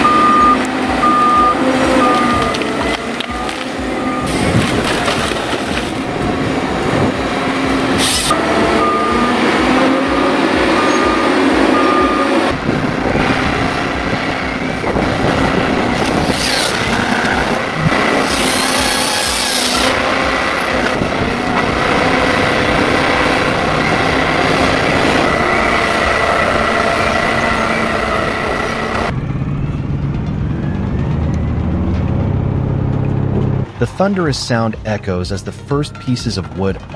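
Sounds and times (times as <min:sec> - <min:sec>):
warning beeps: 0:00.0 - 0:04.6, 0:07.7 - 0:12.6
diesel machinery running: 0:00.0 - 0:36.9.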